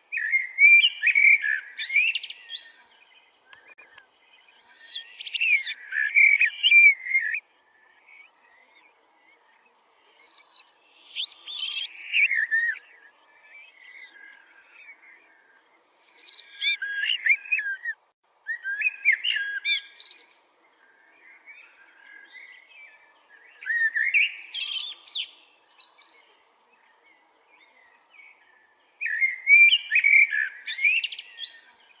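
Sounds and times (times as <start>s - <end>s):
faint bird calls: 0.0s - 32.0s
bird chirping and whistling: 10.5s - 12.8s, 16.1s - 20.4s, 29.0s - 31.8s.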